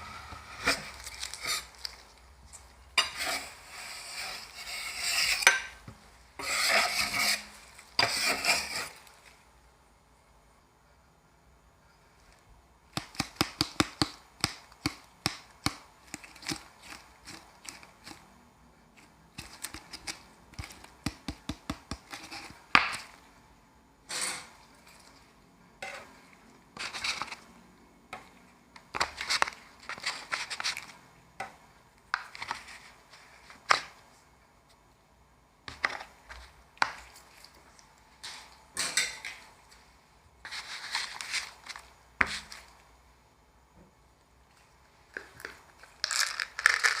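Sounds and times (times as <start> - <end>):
spatula scraping steel pan: 3.0 - 5.8, 6.4 - 9.1, 25.8 - 26.2.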